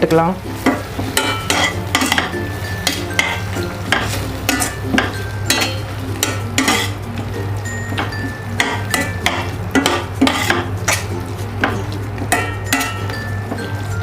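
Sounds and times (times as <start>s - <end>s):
light sizzle: 0.0s - 14.0s
spoon stirring and scraping a pan: 0.5s - 14.0s.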